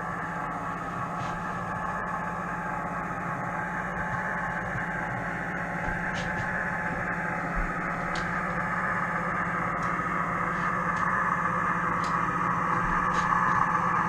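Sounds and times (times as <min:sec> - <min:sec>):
model train motor hum: 0:00.0 - 0:14.0
wheels hissing on rails: 0:06.2 - 0:14.0.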